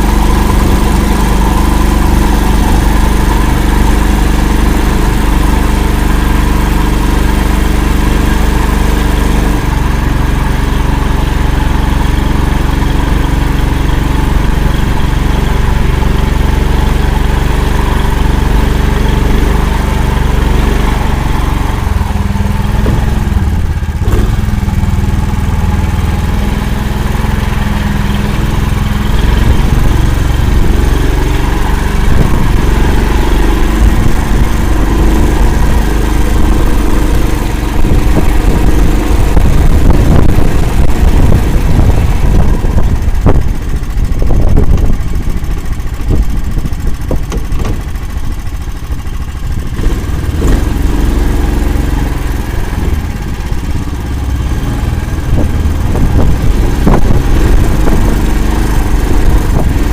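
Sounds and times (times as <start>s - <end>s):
vehicle engine droning: 0.0s - 59.9s.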